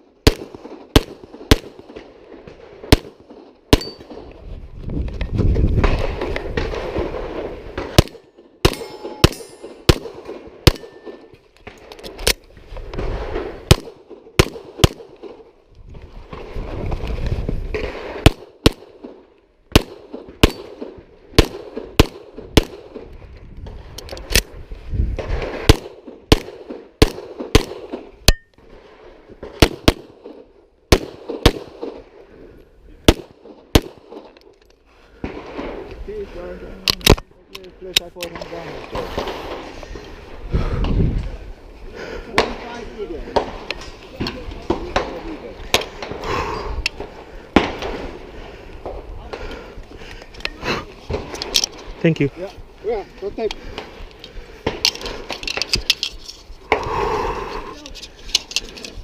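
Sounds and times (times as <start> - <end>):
pistol shots at close range: 0.2 - 2.2, 2.8 - 4.2, 5.9 - 11.3, 13.0 - 15.4, 17.7 - 23.1, 25.2 - 28.5, 29.4 - 32.0, 33.0 - 34.4.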